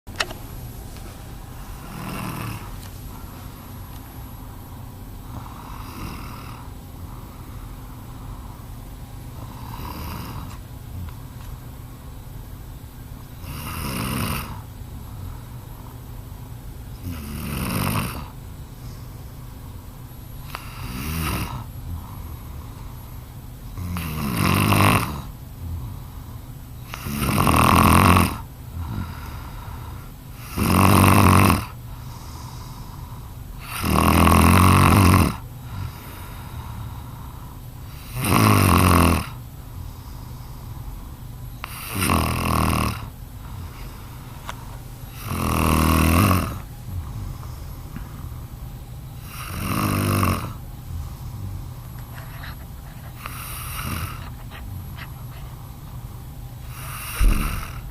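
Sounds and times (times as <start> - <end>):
quiet breathing: 0.9 - 24.1, 24.7 - 27.2, 28.3 - 30.6, 31.7 - 33.8, 35.3 - 38.3, 39.3 - 57.9
loud snoring: 1.7 - 2.8, 5.3 - 6.8, 9.4 - 11.1, 13.4 - 14.7, 17.0 - 18.4, 20.5 - 22.5, 23.7 - 26.1, 26.8 - 29.5, 30.4 - 31.8, 33.6 - 36.9, 37.9 - 39.4, 41.6 - 43.1, 45.1 - 48.3, 49.2 - 55.4, 56.6 - 57.9.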